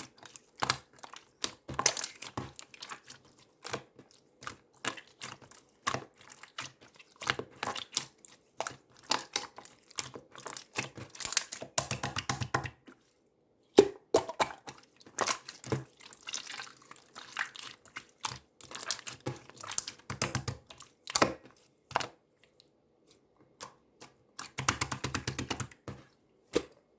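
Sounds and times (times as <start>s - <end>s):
slime squelching and popping: 0.0s - 13.1s, 13.7s - 22.2s.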